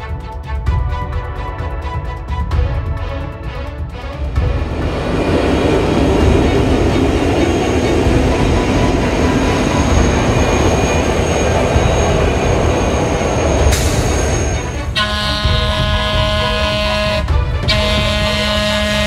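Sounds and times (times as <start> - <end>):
train rumbling on rails: 0.0 - 19.0
wheel squeal: 5.8 - 14.9.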